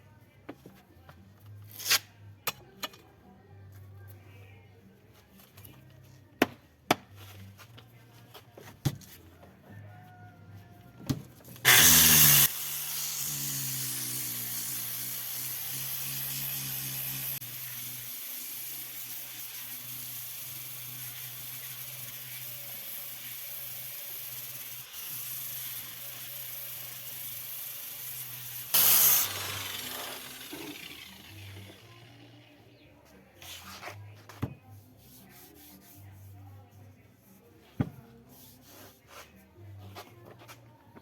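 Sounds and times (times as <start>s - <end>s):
angle grinder grinding: 11.6s - 21.4s, 24.2s - 32.3s.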